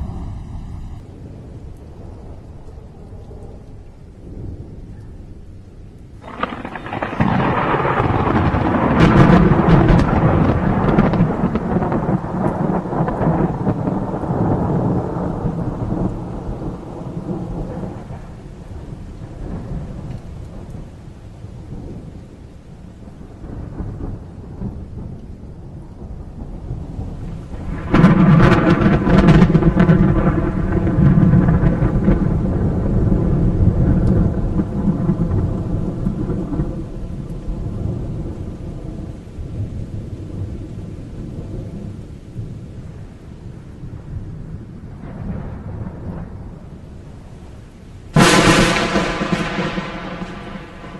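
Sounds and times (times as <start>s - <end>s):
thunder crack: 0.0s - 4.7s, 6.2s - 20.8s, 26.0s - 40.4s, 48.1s - 50.9s
steady rain: 0.0s - 50.9s
thunder rolling: 0.0s - 50.9s.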